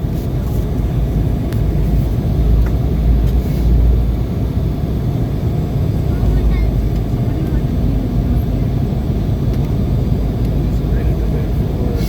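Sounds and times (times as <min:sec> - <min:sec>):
jet engines rumbling in cabin: 0:00.0 - 0:12.0.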